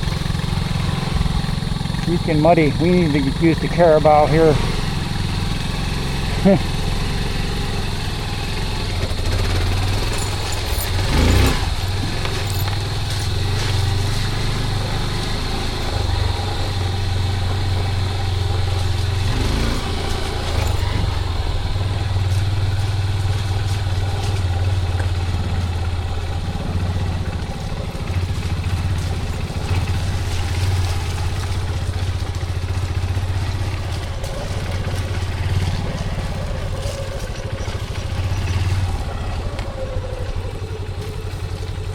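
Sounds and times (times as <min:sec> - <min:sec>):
small motorcycle engine running: 0:00.0 - 0:41.9.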